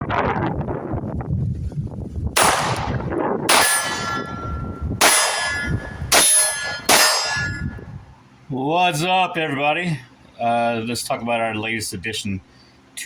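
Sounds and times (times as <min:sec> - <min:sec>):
metallic clang of steel targets: 0:02.4 - 0:07.9.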